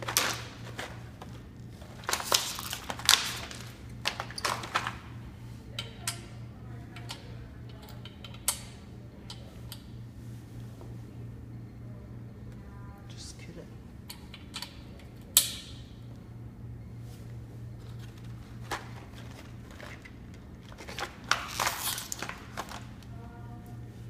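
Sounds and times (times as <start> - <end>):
packaging crinkling: 0.0 - 5.0, 17.8 - 23.1.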